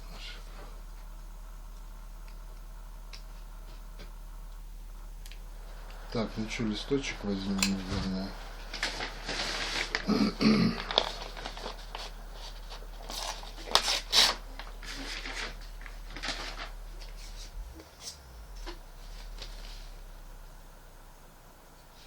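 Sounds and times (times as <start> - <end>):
paper rustling: 7.7 - 18.2.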